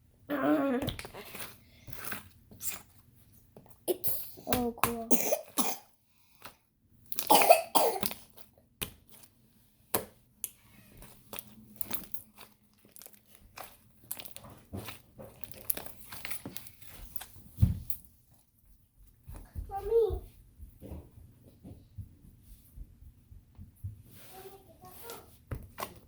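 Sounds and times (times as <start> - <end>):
cough-like burst: 5.1 - 5.9, 7.3 - 8.1
slime squished by hand: 8.0 - 17.4.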